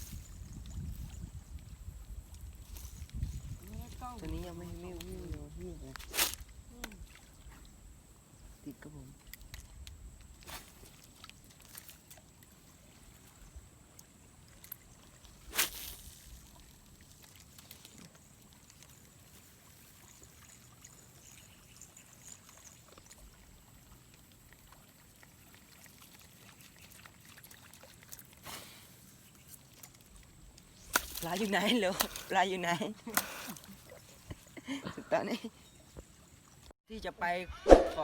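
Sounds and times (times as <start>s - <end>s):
faint trickling water: 0.0s - 37.4s
sharp splash or knock: 37.6s - 38.0s.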